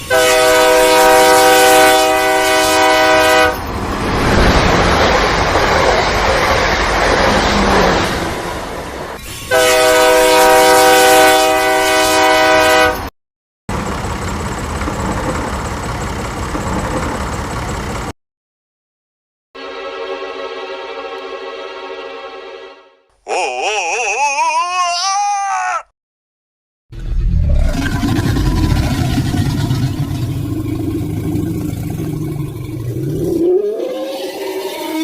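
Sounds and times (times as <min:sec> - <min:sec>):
train horn blowing: 0:00.0 - 0:03.7, 0:09.5 - 0:13.1
train running on rails: 0:00.0 - 0:13.1, 0:13.7 - 0:18.1, 0:19.6 - 0:22.8, 0:33.8 - 0:35.0.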